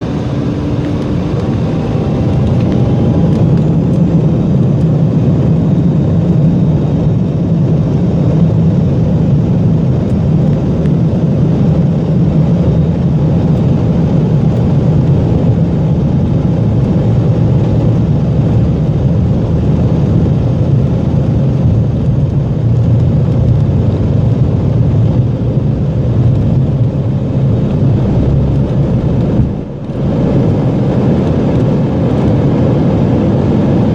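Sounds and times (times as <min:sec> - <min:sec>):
jet airliner takeoff rumble: 0:00.0 - 0:33.9
faint rising whine: 0:12.6 - 0:33.3.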